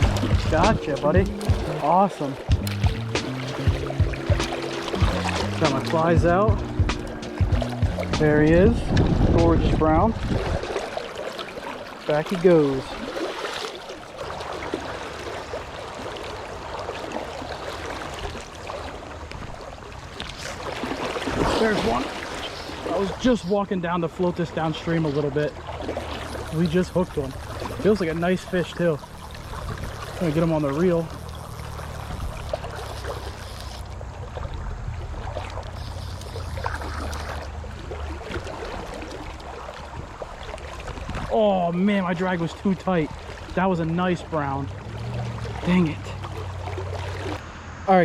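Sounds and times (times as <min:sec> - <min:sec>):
small splashes and clicks: 0:00.0 - 0:06.2, 0:10.2 - 0:23.3, 0:24.8 - 0:41.4
low rumble: 0:00.0 - 0:10.8, 0:46.3 - 0:48.0
stream rushing: 0:00.0 - 0:48.0.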